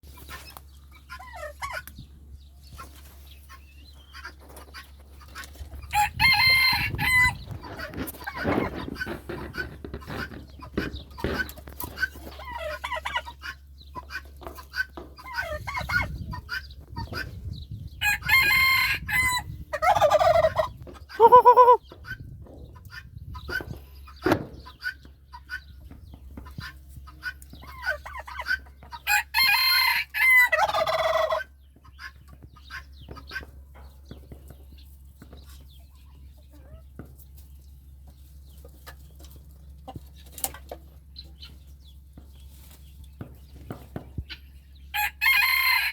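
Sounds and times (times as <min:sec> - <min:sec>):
chicken clucking: 0:00.0 - 0:45.9
rooster crowing: 0:45.0 - 0:45.9.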